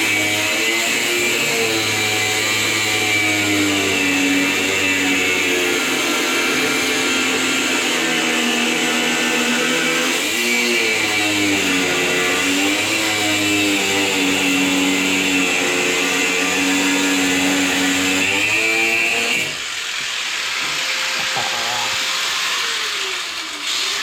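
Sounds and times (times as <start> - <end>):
power grinder whining: 0.0 - 24.0
cutting hiss: 19.4 - 24.0.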